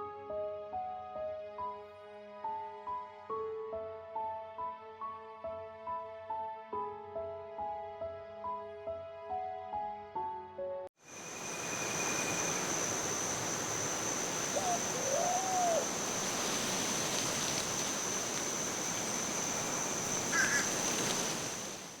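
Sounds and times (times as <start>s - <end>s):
steady hiss: 11.0s - 22.0s
high thin whine: 11.1s - 22.0s
animal call: 12.2s - 21.8s.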